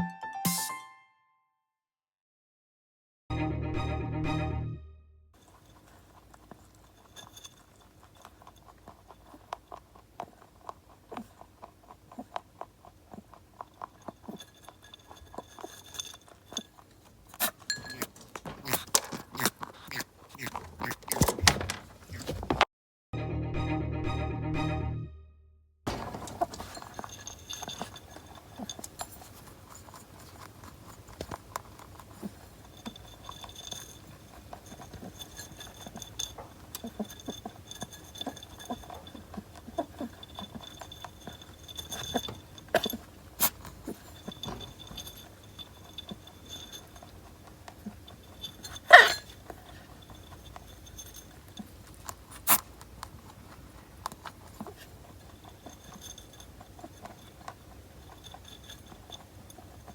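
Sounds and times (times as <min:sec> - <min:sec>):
rabbit clicking and rustling: 0:05.4 - 0:22.7, 0:25.9 - 0:59.9
rabbit sneezing: 0:48.7 - 0:49.4
rabbit squeaky cries: 0:48.9 - 0:49.2.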